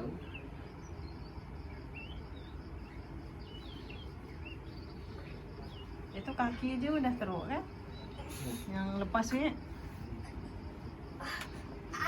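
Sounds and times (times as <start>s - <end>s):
bird chirping: 0.0s - 8.9s
high insect trill: 0.0s - 12.0s.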